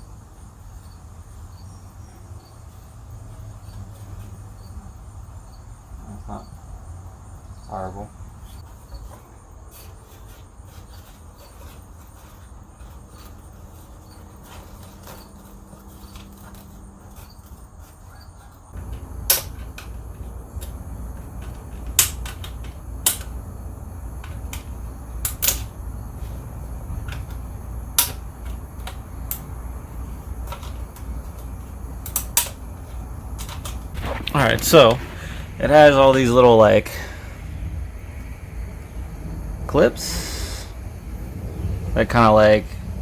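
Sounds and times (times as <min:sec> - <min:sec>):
low rumble: 0:33.9 - 0:43.0.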